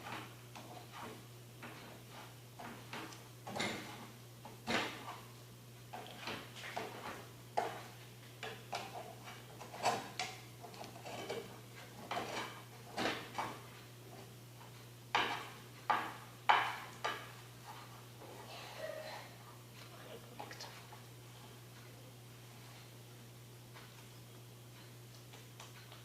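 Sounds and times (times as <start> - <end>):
utensil scraping a pan: 0.0 - 5.3, 8.6 - 13.6
faint steady hum: 0.0 - 26.0.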